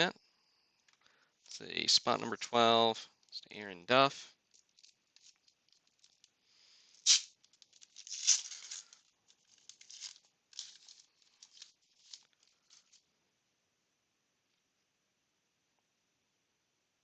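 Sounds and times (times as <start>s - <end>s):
wrapper crinkling: 4.4s - 13.0s
wrapper tearing: 4.5s - 6.3s, 6.9s - 13.0s.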